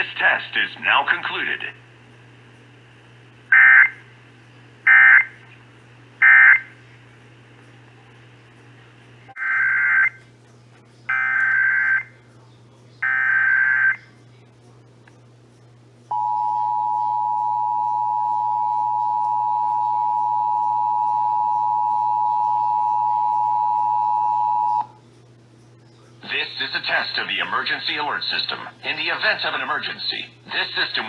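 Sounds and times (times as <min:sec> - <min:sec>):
two-tone alert signal: 0:16.1 - 0:24.8.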